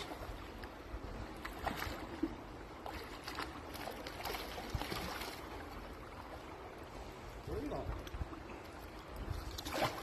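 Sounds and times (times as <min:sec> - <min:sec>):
river water running: 0:00.0 - 0:10.0
small splashes and knocks: 0:01.4 - 0:05.8, 0:09.3 - 0:10.0.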